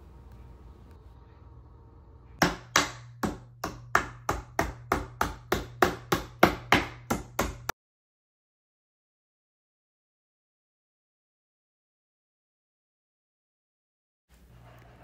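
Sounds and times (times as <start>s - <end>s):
low steady hum: 0.0s - 7.7s.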